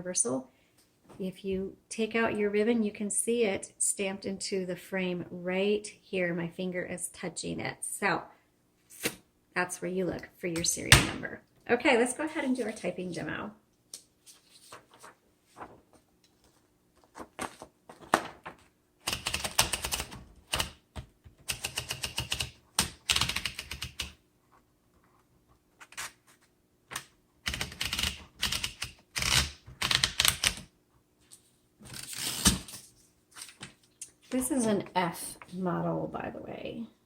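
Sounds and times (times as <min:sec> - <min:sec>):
manual typewriter typing: 0:19.0 - 0:20.8, 0:21.4 - 0:24.2, 0:27.4 - 0:30.7.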